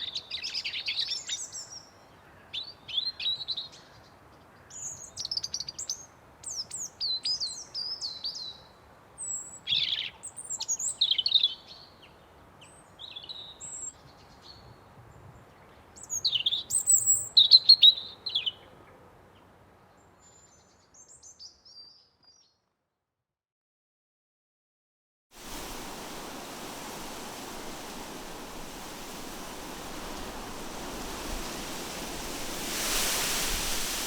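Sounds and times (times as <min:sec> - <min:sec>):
wind in trees: 0:25.3 - 0:34.0
small birds chirping: 0:25.4 - 0:34.0.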